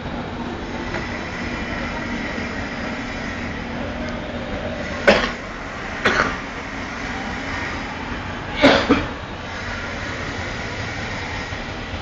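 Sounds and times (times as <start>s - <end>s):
steady background rumble: 0.0s - 12.0s
person coughing: 8.6s - 9.1s.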